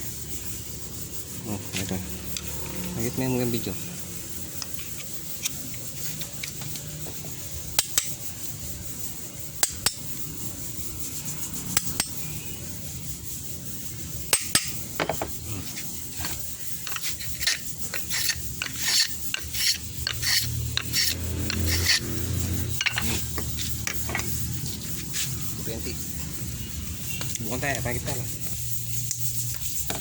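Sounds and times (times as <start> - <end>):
rasping hand scraping strokes: 15.4 - 26.4.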